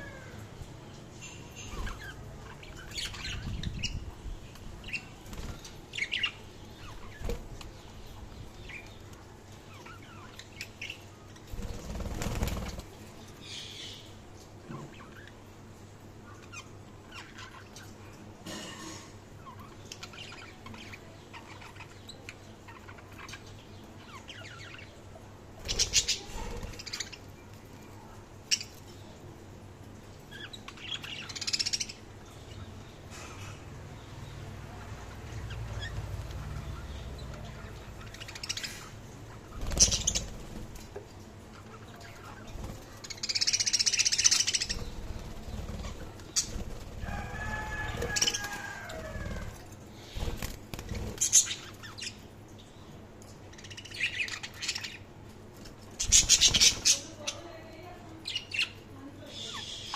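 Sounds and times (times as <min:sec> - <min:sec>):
budgies chirping: 0:25.6 - 0:27.3, 0:34.0 - 0:40.9, 0:41.5 - 0:52.3, 0:53.5 - 0:59.9.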